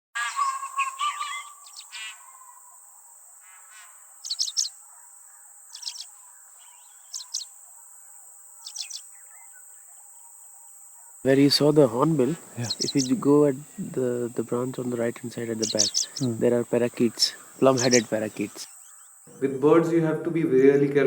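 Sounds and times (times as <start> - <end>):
birdsong: 0.2 - 20.3
high-pitched insect drone: 3.8 - 4.8, 5.7 - 10.6, 11.4 - 19.4.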